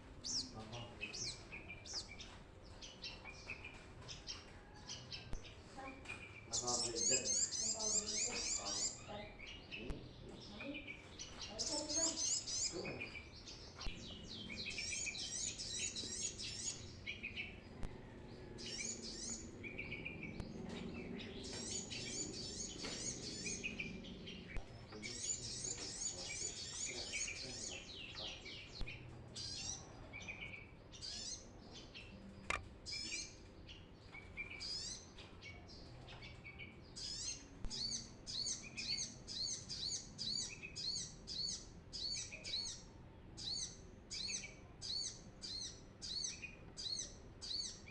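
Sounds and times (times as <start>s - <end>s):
bird singing high chittering trills: 6.3s - 9.8s, 10.5s - 28.8s.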